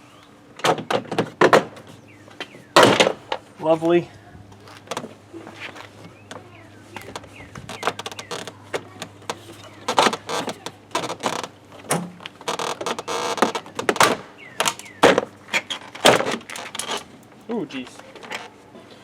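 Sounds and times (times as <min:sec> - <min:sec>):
plastic scraping and rubbing: 0:04.6 - 0:17.1.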